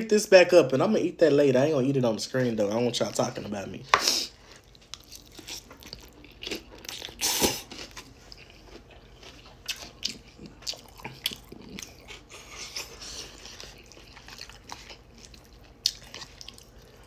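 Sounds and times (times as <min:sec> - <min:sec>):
chewing and crunching food: 0:04.2 - 0:17.0.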